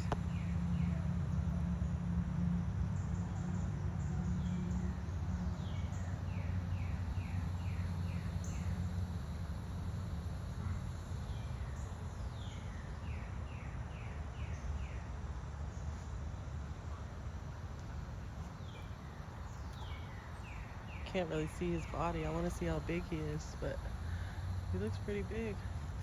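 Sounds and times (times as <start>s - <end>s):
steady low rumble: 17.4s - 26.0s.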